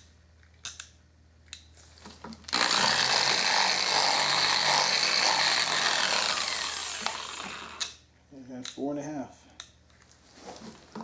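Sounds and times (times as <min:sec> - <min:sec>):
power polisher buffing metal: 0:02.6 - 0:07.8.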